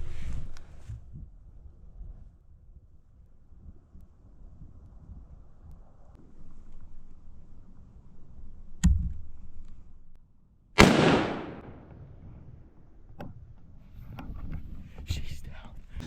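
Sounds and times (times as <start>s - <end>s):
rifle shot: 10.8s - 12.0s.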